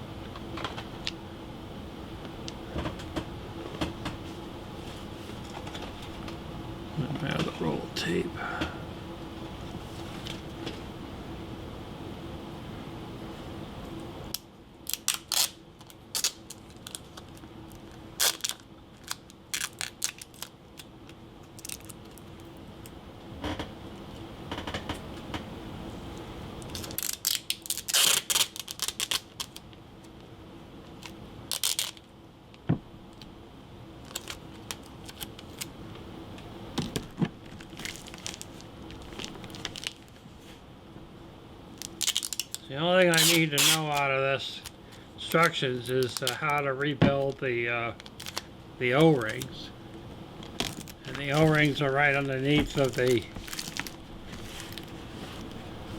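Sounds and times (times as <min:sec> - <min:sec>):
tape and paper clicks and crinkles: 0:14.3 - 0:23.0, 0:26.6 - 0:30.2, 0:30.9 - 0:32.1, 0:34.0 - 0:35.7, 0:36.8 - 0:40.2, 0:41.8 - 0:49.6, 0:50.4 - 0:55.6
paper crackling: 0:14.9 - 0:20.9, 0:26.7 - 0:29.7, 0:34.0 - 0:35.7, 0:37.4 - 0:40.2, 0:41.8 - 0:49.6, 0:50.4 - 0:55.9.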